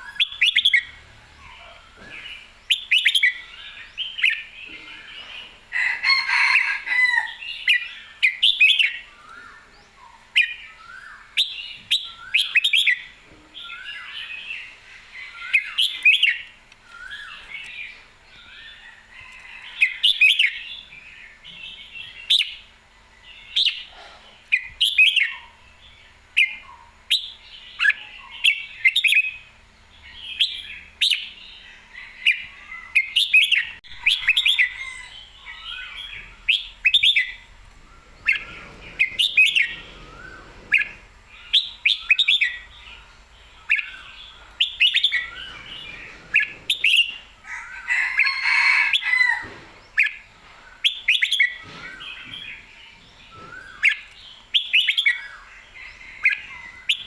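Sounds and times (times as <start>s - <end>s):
bird whistled song: 0.0s - 1.0s, 2.0s - 5.5s, 7.6s - 14.3s, 32.1s - 47.3s, 47.9s - 57.0s.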